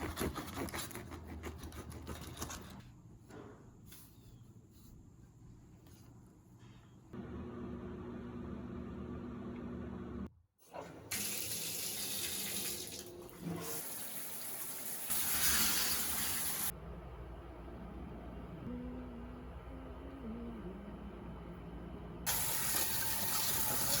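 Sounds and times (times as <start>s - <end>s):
tap water running into sink: 11.1s - 16.7s, 22.3s - 24.0s
steady low hum: 16.7s - 22.3s.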